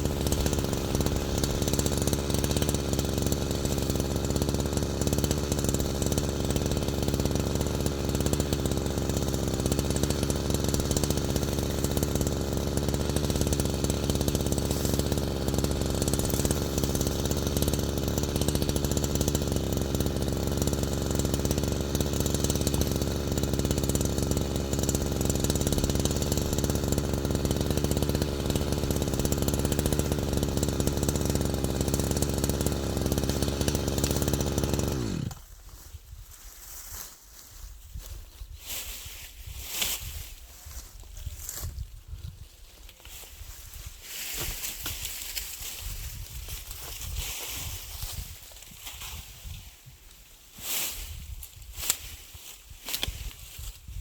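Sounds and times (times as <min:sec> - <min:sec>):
small engine running: 0:00.0 - 0:35.5.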